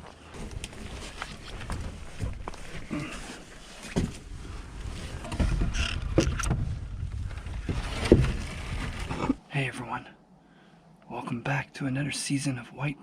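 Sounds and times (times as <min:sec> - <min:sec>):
rustling: 0:00.0 - 0:09.5.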